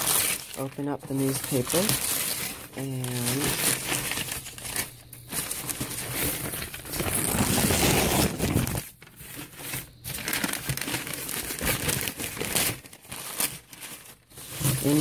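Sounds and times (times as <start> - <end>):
newspaper crumpling by hand: 0.0 - 15.0.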